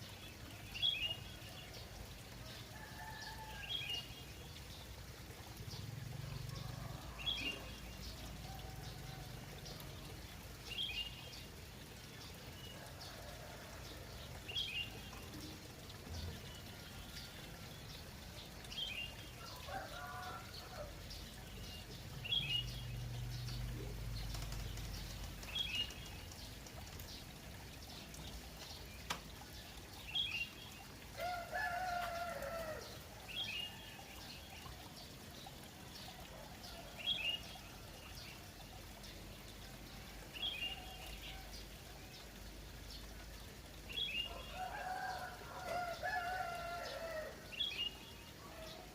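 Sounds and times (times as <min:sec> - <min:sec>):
water trickling: 0:00.0 - 0:48.9
rooster crowing: 0:31.2 - 0:32.9, 0:44.3 - 0:47.4.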